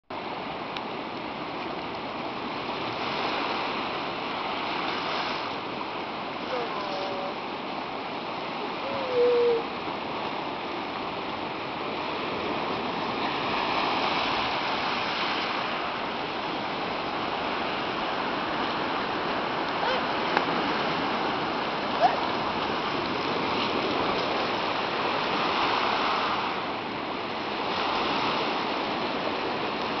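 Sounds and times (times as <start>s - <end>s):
surf washing on beach: 0.1s - 30.0s
sea lions calling: 6.4s - 7.4s, 8.6s - 9.8s, 19.7s - 20.2s, 21.8s - 22.6s.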